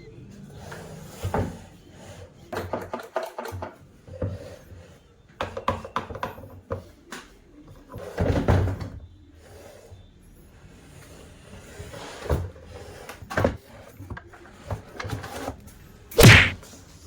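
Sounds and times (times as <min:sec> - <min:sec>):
heavy bump: 0:16.2 - 0:16.6.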